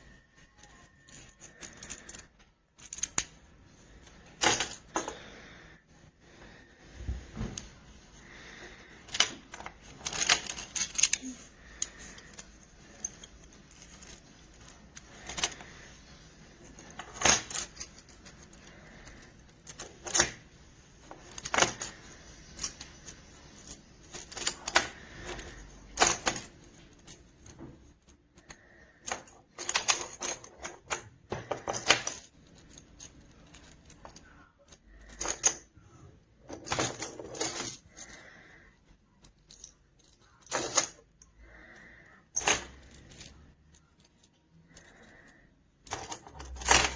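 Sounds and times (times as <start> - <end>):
plastic blocks clicking together: 1.0 - 3.4, 9.0 - 16.0, 16.7 - 35.7, 42.3 - 46.9.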